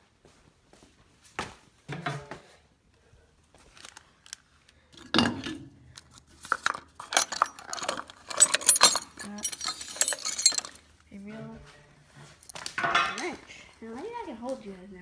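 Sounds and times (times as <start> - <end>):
metal hand tools clinking: 6.4 - 10.8.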